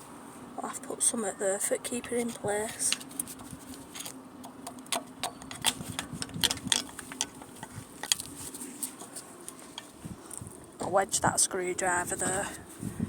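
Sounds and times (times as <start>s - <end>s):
faint steady hum: 0.0s - 13.0s
screwdriver clicking on metal: 3.9s - 8.3s.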